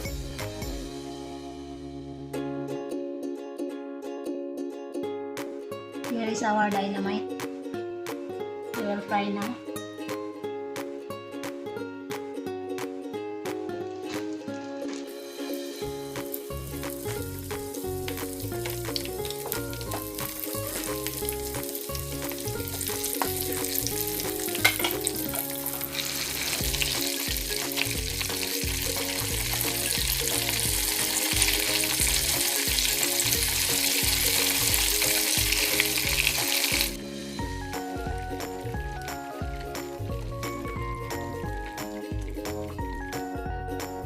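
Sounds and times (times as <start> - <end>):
soft background music: 0.0 - 44.0
spring rolls sizzling in oil: 13.9 - 42.4.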